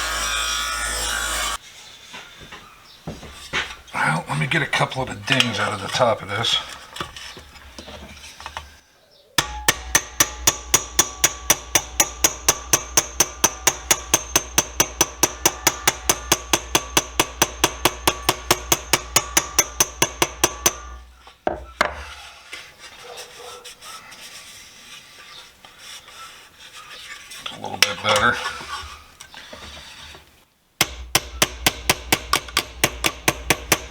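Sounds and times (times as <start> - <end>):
hammer tapping sheet metal: 9.4 - 21.1, 30.8 - 33.9.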